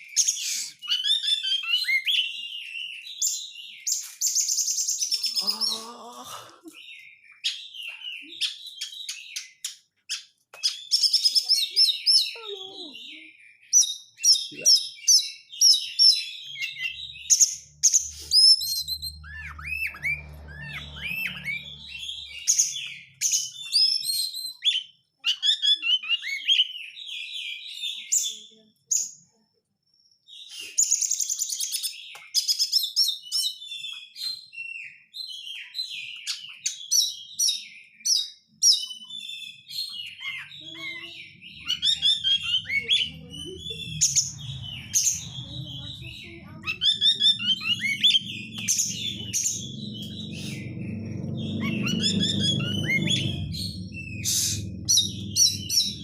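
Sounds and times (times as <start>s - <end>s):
bird singing varied song: 0.0s - 56.0s.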